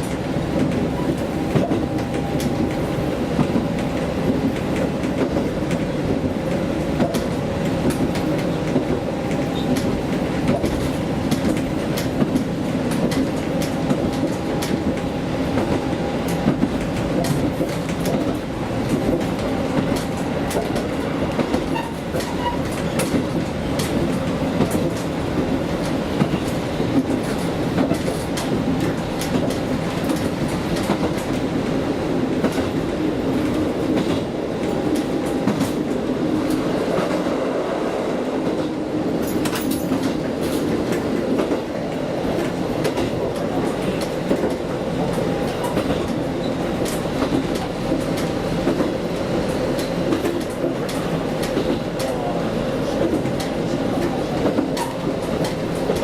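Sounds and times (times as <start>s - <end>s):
wheels clacking over rail joints: 0.0s - 31.6s, 38.4s - 56.0s
train running rumble: 0.0s - 56.0s.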